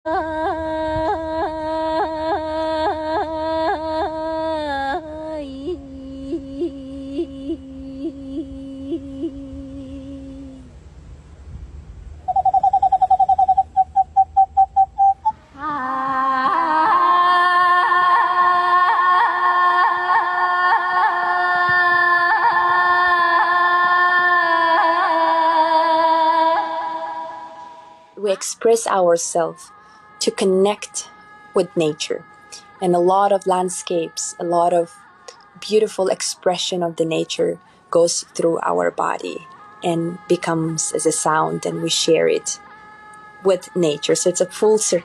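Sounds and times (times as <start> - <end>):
person singing yodel-like notes: 0.0 - 10.7, 12.3 - 45.0
short repeated call-like tones: 12.3 - 15.4.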